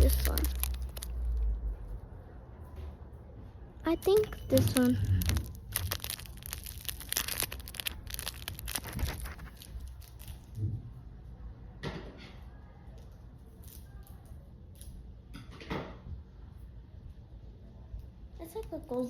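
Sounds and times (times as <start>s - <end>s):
plastic packaging crinkling: 0.0s - 1.4s, 3.9s - 10.6s.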